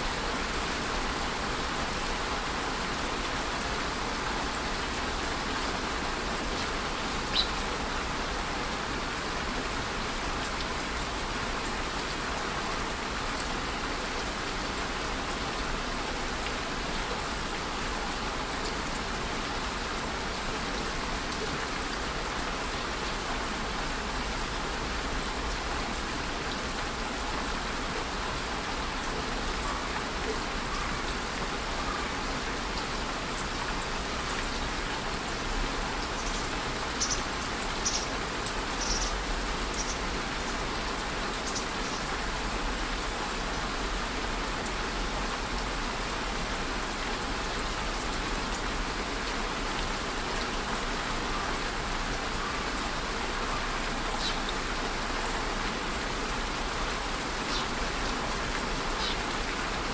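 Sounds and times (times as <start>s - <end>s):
steady rain falling: 0.0s - 59.9s
sharp water drips: 34.9s - 40.5s.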